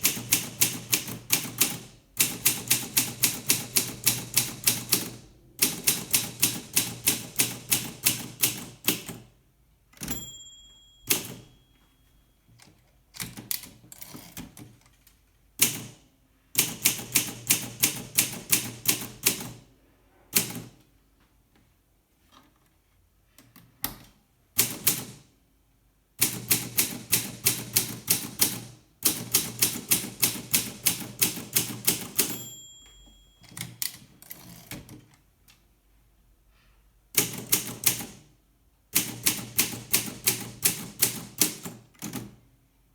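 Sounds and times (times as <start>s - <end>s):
typewriter keystrokes: 0.0s - 9.3s, 11.1s - 11.5s, 16.6s - 19.6s, 26.2s - 32.5s, 37.2s - 38.2s, 39.0s - 42.4s
typewriter margin bell ringing: 10.0s - 12.0s, 31.8s - 33.8s.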